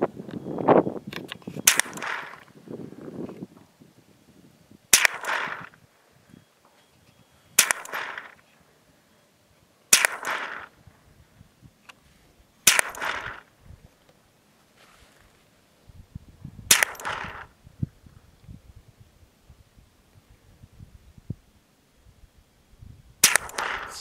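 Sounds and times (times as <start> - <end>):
rifle shots with echo: 1.6 - 2.4, 4.9 - 5.8, 7.6 - 8.4, 9.9 - 10.8, 12.6 - 13.5, 16.7 - 17.5, 23.2 - 24.0.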